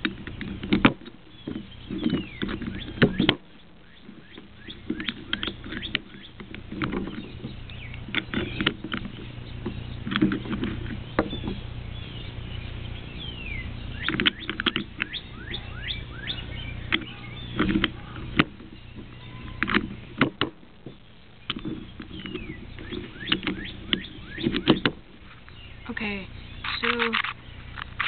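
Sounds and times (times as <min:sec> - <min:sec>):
plastic pieces squeaking: 0:14.0 - 0:25.6, 0:26.6 - 0:28.0.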